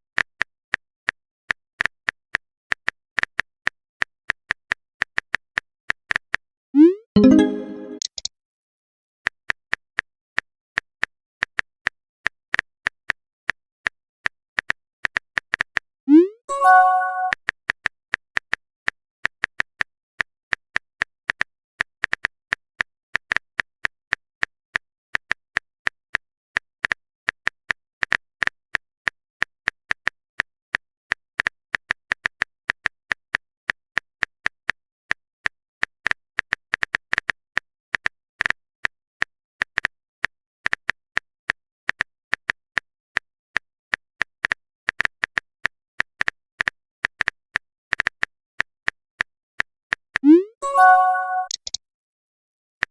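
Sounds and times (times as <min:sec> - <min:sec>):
phone keyboard typing taps: 0:50.2 - 0:51.8
brief chime: 0:50.6 - 0:51.6.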